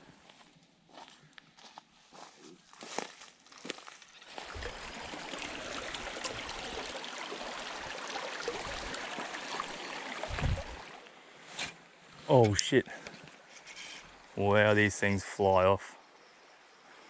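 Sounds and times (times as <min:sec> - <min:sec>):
flowing creek water: 0:04.1 - 0:17.0.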